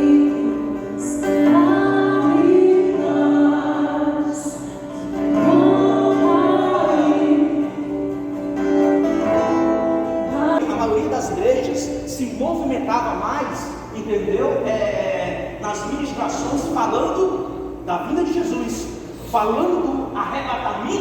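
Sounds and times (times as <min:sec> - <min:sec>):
strummed acoustic guitar: 0:00.0 - 0:12.2.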